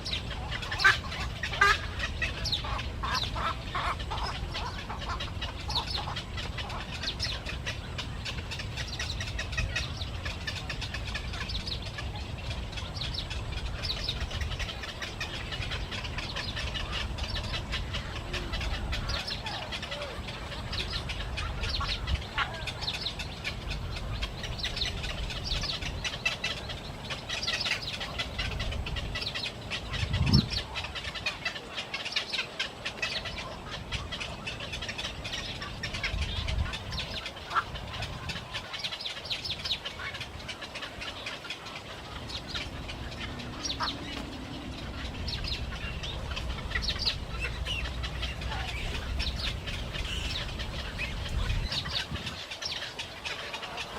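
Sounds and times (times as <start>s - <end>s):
steady low rumble: 0.0s - 32.0s, 32.8s - 53.2s
flock of birds chirping: 0.0s - 53.9s.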